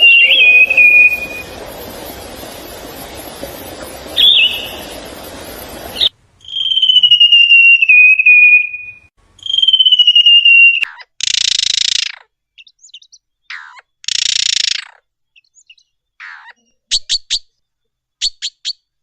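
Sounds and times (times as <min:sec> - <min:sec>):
steady background noise: 0:00.0 - 0:06.4
bird chirp: 0:00.0 - 0:11.0, 0:12.0 - 0:17.6
songbird trilling: 0:00.0 - 0:14.8.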